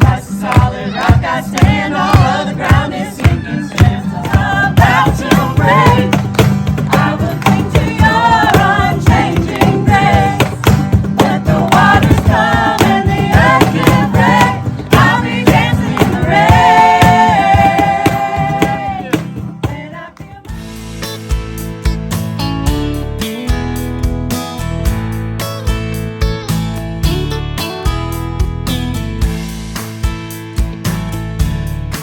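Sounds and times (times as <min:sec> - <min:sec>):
voices singing: 0:00.0 - 0:20.5
steady drum beat: 0:00.0 - 0:22.4.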